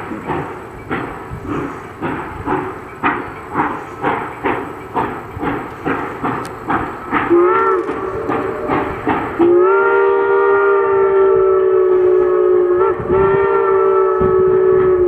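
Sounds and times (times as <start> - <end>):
steam locomotive exhaust chuffing: 0.0 - 15.0
steam whistle blasts: 7.3 - 15.0.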